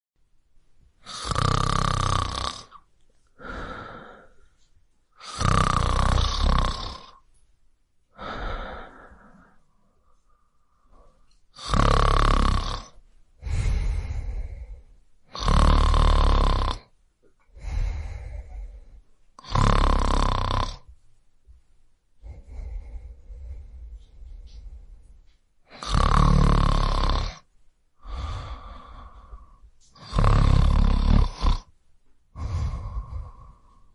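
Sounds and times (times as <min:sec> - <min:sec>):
man snoring: 0:01.0 - 0:02.8, 0:05.2 - 0:07.2, 0:11.6 - 0:16.9, 0:17.6 - 0:20.9, 0:22.2 - 0:24.6, 0:25.7 - 0:31.7, 0:32.4 - 0:33.9.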